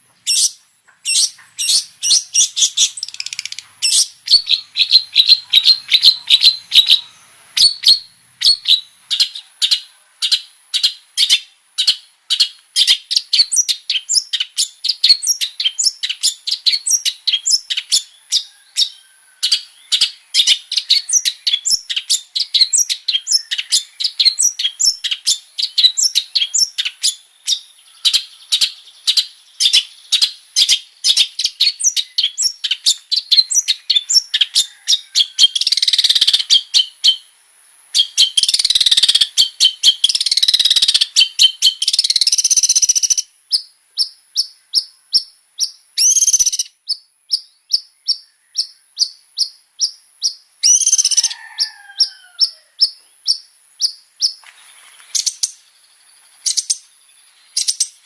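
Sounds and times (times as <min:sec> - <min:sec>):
shrike singing sharp chirps: 0:00.2 - 0:18.1, 0:38.0 - 0:47.0.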